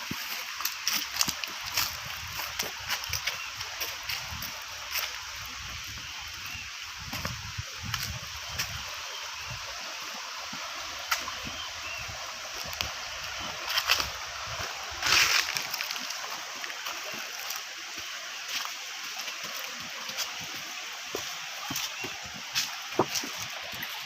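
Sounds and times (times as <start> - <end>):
water splashes: 11.0 - 24.0.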